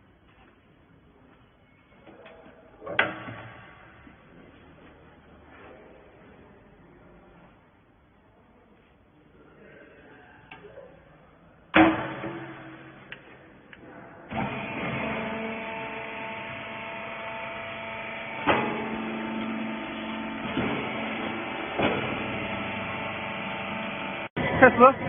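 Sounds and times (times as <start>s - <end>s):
baler machine clunk: 11.7s - 13.3s, 18.2s - 22.7s
hydraulic power unit humming: 11.7s - 25.0s.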